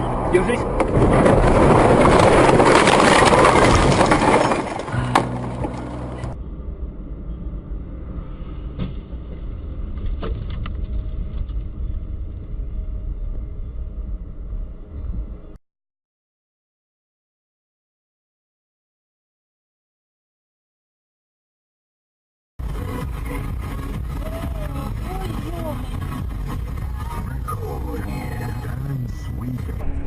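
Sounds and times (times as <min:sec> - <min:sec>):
engine and road hum: 0:00.0 - 0:03.9, 0:04.6 - 0:15.6, 0:22.6 - 0:30.0.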